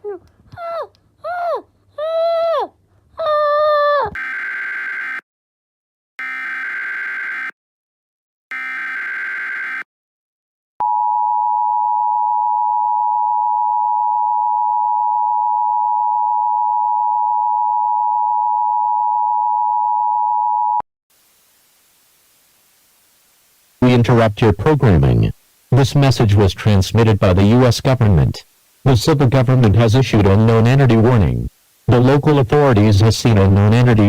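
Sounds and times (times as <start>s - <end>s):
faint hiss: 21.1s - 34.0s.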